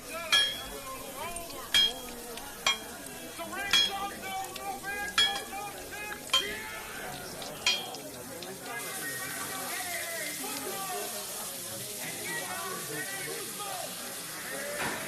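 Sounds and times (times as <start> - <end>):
frying on a griddle: 0.0 - 15.0
murmuring chatter: 0.0 - 15.0
spoon clinking against glass: 0.2 - 5.7, 6.3 - 6.8, 7.5 - 8.2.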